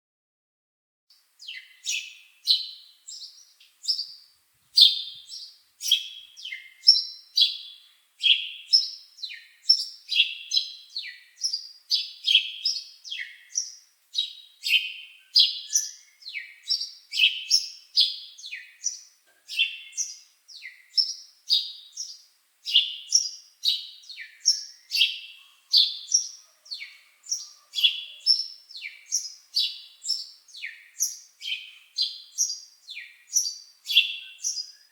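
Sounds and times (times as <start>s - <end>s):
bird chirping: 1.4s - 34.9s.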